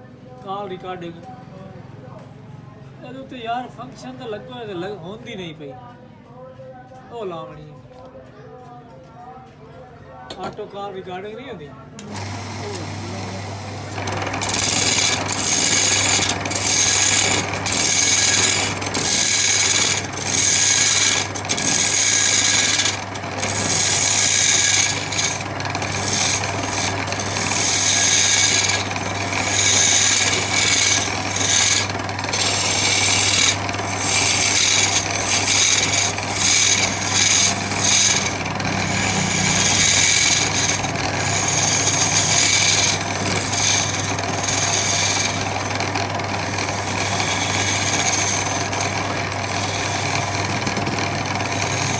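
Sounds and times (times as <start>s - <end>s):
wood being sanded by hand: 12.4s - 51.9s.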